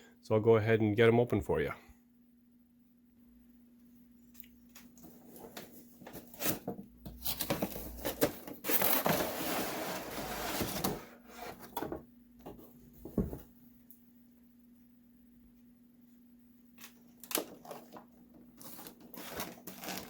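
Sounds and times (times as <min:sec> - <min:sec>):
packaging rubbing and sliding: 0:06.1 - 0:11.7, 0:18.6 - 0:20.0.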